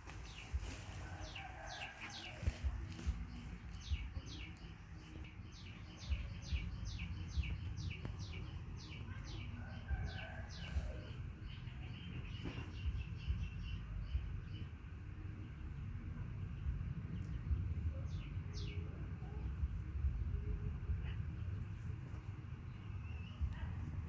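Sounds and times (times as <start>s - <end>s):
bird chirping: 0.0s - 14.8s
low rumble: 15.5s - 24.0s.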